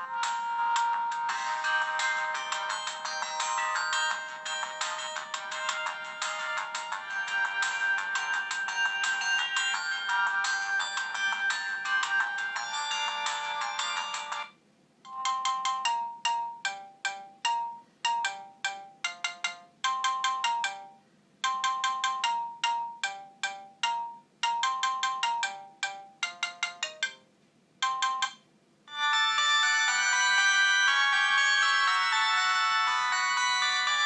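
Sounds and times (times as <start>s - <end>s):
mobile phone ringtones: 0.7s - 14.5s, 27.8s - 34.0s.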